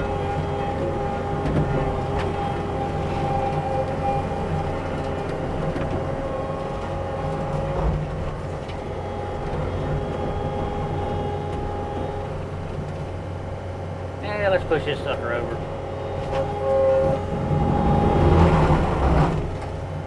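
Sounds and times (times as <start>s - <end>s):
diesel engine running under load: 0.0s - 20.0s
hydraulic whine: 0.0s - 20.0s.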